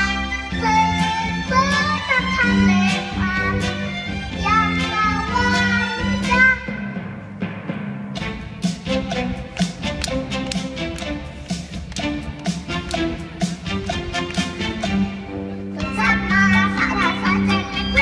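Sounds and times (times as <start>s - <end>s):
child singing: 0.0s - 6.8s, 15.8s - 18.0s
instrumental backing music: 0.0s - 18.0s.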